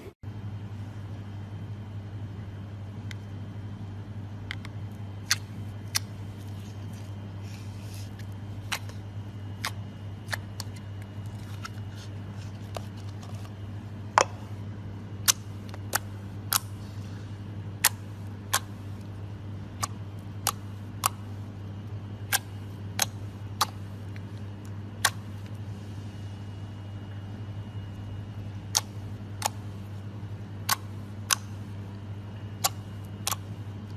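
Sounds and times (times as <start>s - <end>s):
steady low hum: 0.0s - 33.9s.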